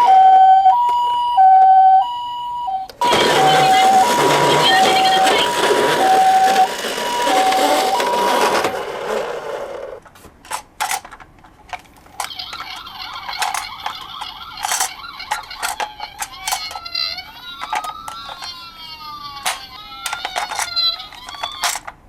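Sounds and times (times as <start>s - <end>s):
toy siren alternating two tones: 0.0s - 8.7s.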